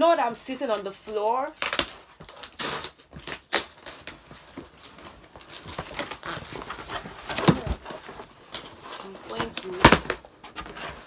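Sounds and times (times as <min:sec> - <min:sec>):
packaging crinkling: 0:01.1 - 0:11.0
cardboard box taps and knocks: 0:07.2 - 0:08.1.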